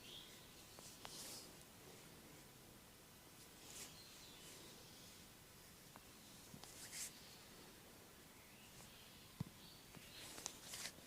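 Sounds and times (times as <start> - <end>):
soft brushing sound: 0.2 - 2.6, 3.4 - 7.8.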